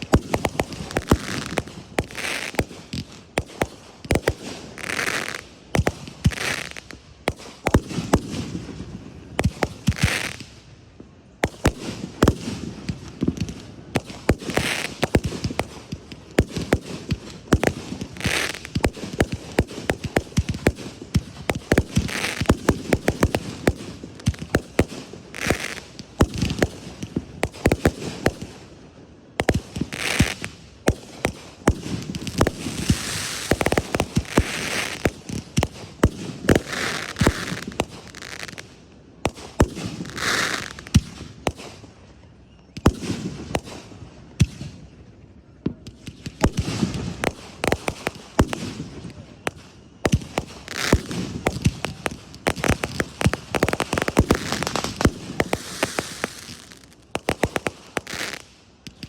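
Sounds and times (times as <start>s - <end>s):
fireworks bangs and crackling: 0.0s - 59.0s
fireworks hissing rush: 16.6s - 26.9s, 31.2s - 38.7s, 39.8s - 41.0s, 46.5s - 58.5s.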